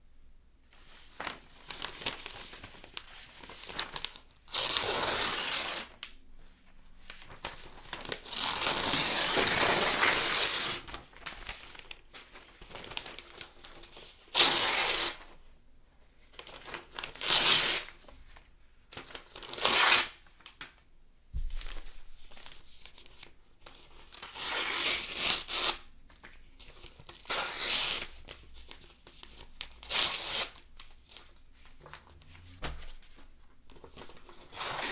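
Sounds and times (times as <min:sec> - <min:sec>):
paper rustling: 0:07.1 - 0:14.0, 0:28.0 - 0:34.9
newspaper tearing: 0:07.8 - 0:11.9, 0:17.0 - 0:18.0, 0:19.0 - 0:20.2.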